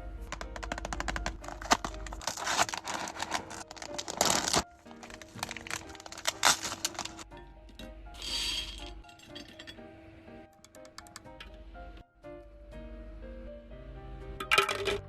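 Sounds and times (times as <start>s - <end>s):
background music: 0.0s - 15.0s
packaging crinkling: 0.2s - 7.3s.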